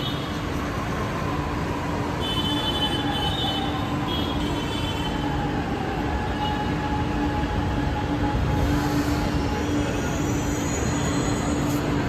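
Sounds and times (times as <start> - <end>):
metro train rumble and whine: 0.0 - 12.0
high brake squeals: 8.5 - 12.0.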